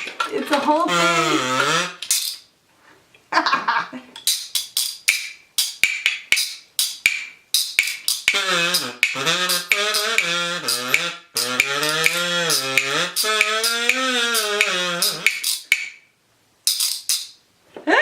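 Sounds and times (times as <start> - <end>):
person humming buzzy tune: 0.8 - 2.1, 8.1 - 15.7.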